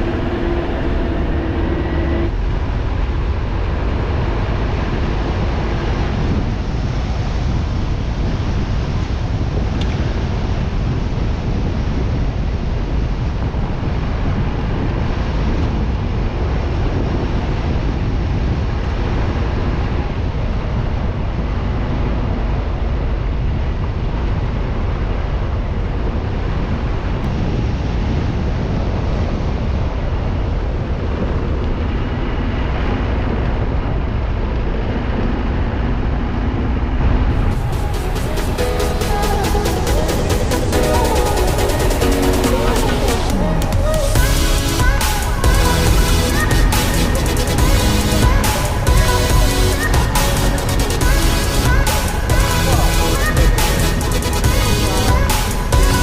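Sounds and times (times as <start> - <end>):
moving vehicle noise: 0.0 - 56.0
wind rumble on microphone: 0.0 - 56.0.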